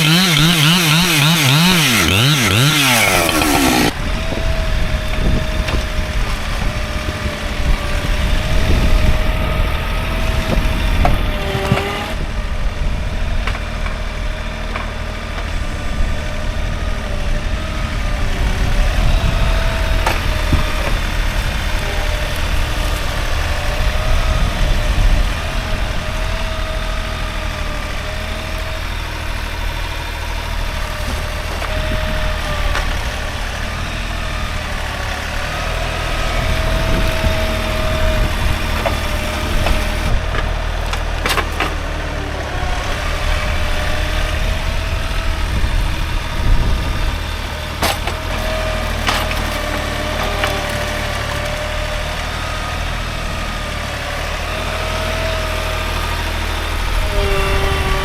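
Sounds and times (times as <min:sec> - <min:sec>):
sharp wood-like cracks: 0:00.0 - 0:04.0, 0:47.8 - 0:51.6
engine running: 0:00.0 - 0:58.0.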